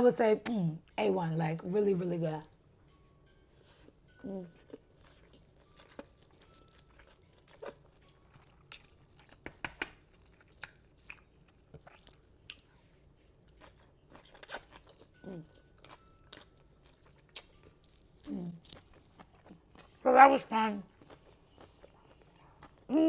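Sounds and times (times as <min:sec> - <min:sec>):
person chewing and biting food: 0:04.5 - 0:20.0, 0:20.9 - 0:23.0.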